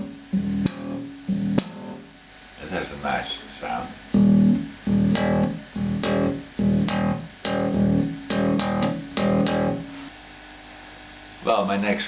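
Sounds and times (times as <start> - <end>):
electric bass notes and chords: 0.0 - 2.2, 3.7 - 10.1.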